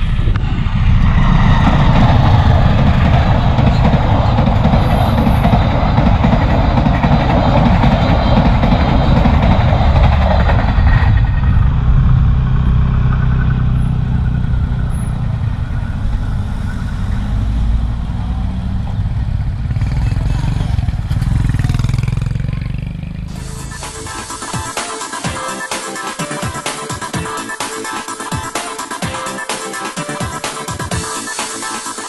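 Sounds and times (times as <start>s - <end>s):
motorcycle engine running: 0.0s - 24.0s
car engines running: 0.0s - 24.3s
train rumbling past: 0.0s - 27.2s.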